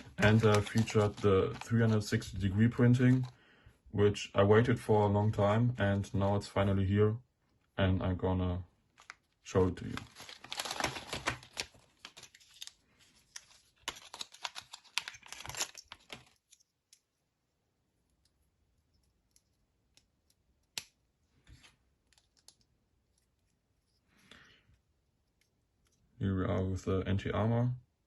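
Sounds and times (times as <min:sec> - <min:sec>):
packaging torn and rustled: 0:00.0 - 0:02.2, 0:09.8 - 0:16.6.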